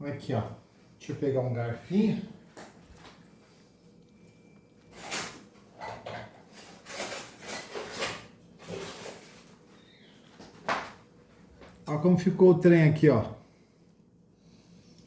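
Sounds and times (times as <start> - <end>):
cutlery rattling and scraping: 5.0 - 9.4.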